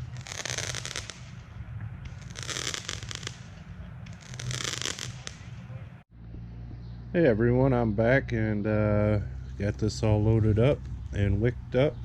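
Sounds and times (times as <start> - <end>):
fireworks popping and crackling: 0.0 - 5.8
low steady hum: 5.5 - 12.0.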